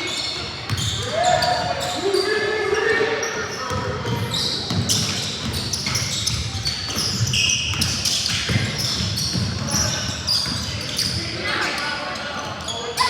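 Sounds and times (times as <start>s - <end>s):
sneaker squeaks on hardwood: 0.0s - 2.4s, 3.4s - 11.3s.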